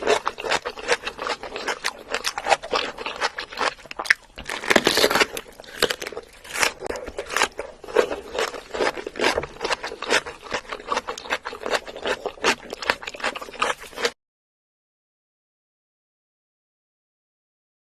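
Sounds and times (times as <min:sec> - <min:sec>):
wet chewing sounds: 0:00.0 - 0:14.2.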